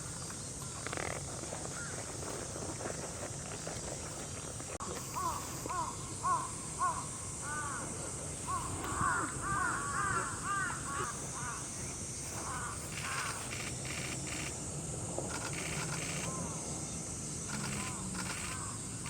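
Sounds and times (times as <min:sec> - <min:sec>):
steady high-pitched hiss: 0:00.0 - 0:19.0
crows cawing: 0:01.8 - 0:02.0, 0:05.1 - 0:07.9, 0:08.5 - 0:11.8, 0:12.4 - 0:14.0.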